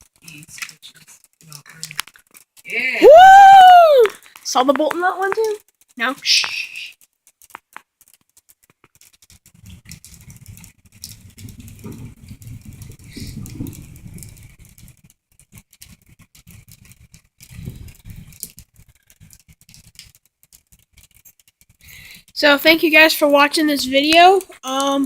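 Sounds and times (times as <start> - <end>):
thunder rumbling: 9.8 - 15.0.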